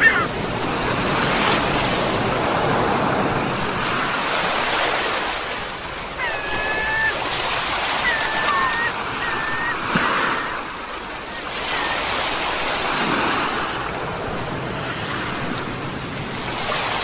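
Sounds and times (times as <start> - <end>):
seagull call: 0.0 - 0.4, 6.1 - 12.9
ocean surf washing ashore: 0.0 - 17.0.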